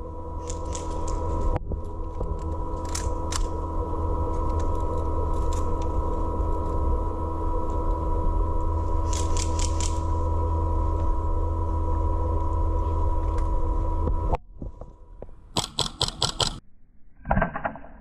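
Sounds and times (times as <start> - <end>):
wind rumble: 0.0 - 15.5
electronic hum: 0.0 - 18.0
airsoft guns firing: 15.5 - 16.6.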